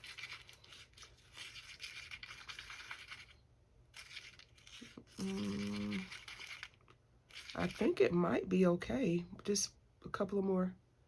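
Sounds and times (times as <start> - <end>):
stir stick scraping in cup: 0.0 - 3.4, 4.0 - 8.0.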